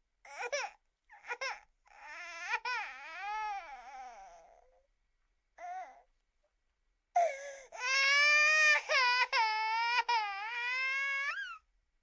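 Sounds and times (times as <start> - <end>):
baby crying: 0.3 - 4.7, 7.2 - 11.6.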